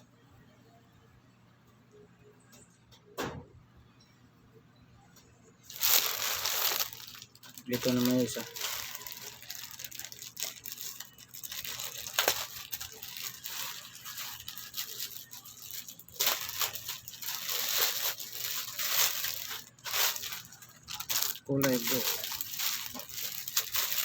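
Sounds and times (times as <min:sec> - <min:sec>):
packaging crinkling and rustling: 0:05.7 - 0:24.0.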